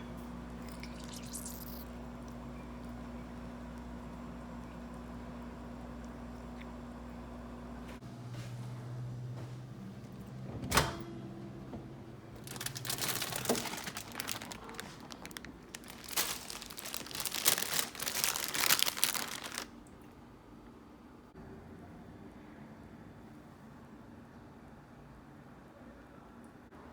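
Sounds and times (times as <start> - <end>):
crinkling and rustling: 12.3 - 19.8.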